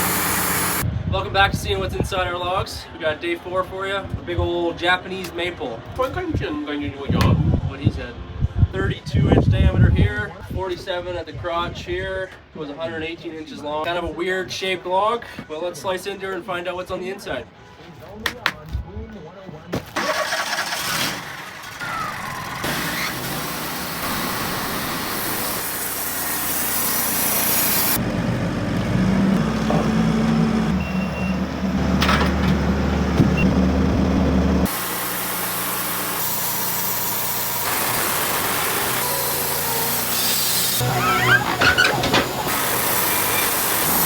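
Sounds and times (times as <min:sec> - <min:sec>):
sawmill cutting log: 0:00.0 - 0:00.8, 0:19.8 - 0:44.0.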